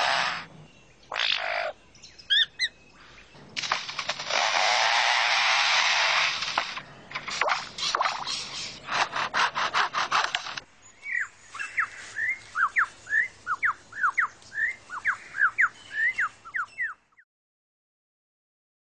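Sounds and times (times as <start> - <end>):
bird rasping pulses: 0.0 - 16.1
bird whistled notes: 11.1 - 17.0.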